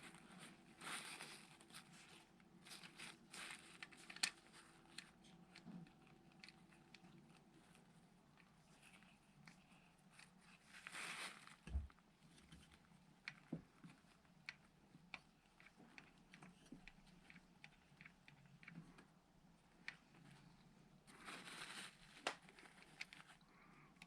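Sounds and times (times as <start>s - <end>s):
short rustle: 10.5s - 11.9s.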